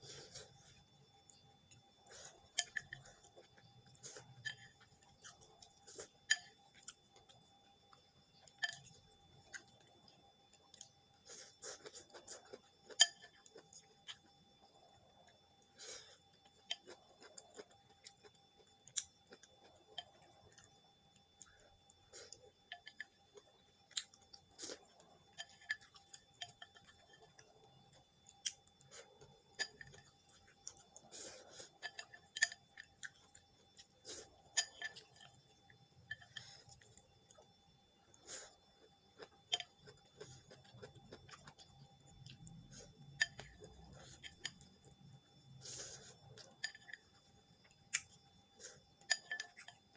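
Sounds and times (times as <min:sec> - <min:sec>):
soft chewing: 0:00.0 - 0:49.9.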